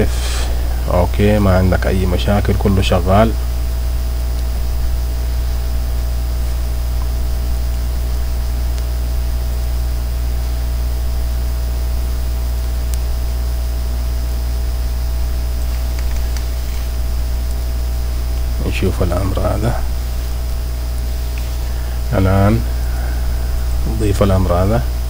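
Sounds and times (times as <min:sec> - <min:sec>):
low electrical hum with hiss: 0:00.0 - 0:25.0
faint tiny clicks: 0:15.6 - 0:16.5.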